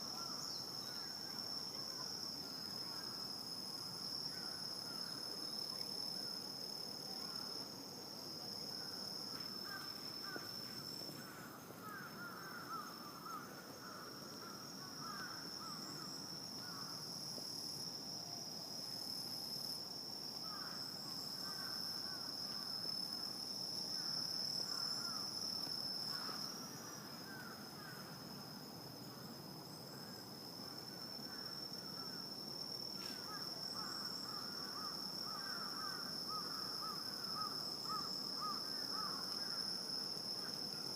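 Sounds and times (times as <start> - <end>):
high-pitched insect trill: 0.0 - 40.9
scratchy insect chirping: 8.5 - 17.8, 30.0 - 40.9.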